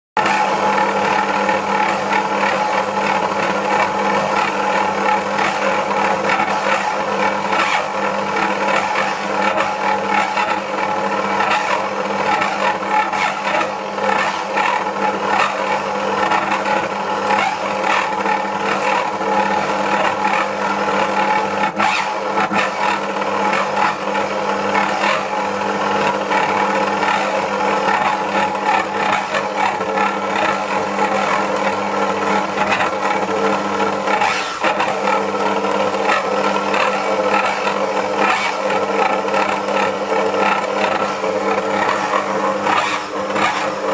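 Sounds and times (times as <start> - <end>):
stand mixer motor straining: 0.2 - 43.9.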